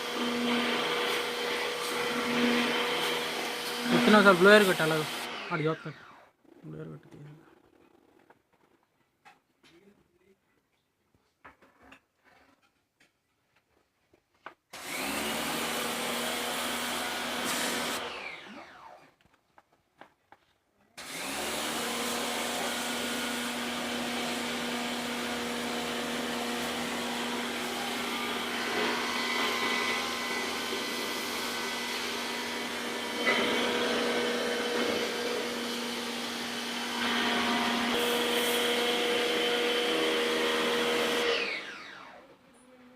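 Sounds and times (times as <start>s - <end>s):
electric air blower running: 0.0s - 6.3s, 14.8s - 19.0s, 21.0s - 42.3s.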